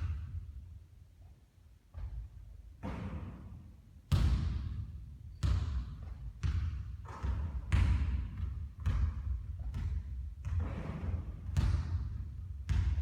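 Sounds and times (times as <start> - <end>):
basketball bouncing on a court: 0.0 - 0.6, 4.1 - 13.0.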